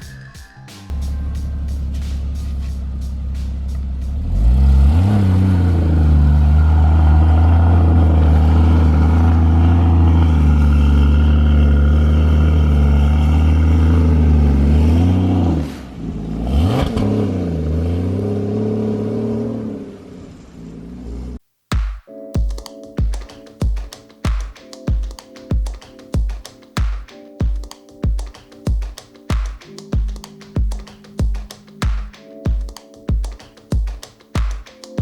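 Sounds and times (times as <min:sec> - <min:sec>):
car engine revving: 0:00.9 - 0:21.3.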